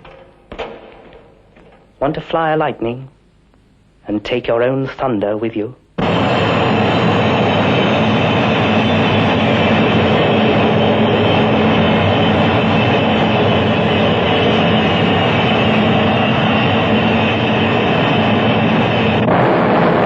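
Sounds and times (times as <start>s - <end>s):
low hum: 5.8s - 20.0s
jet engine roar: 6.0s - 20.0s.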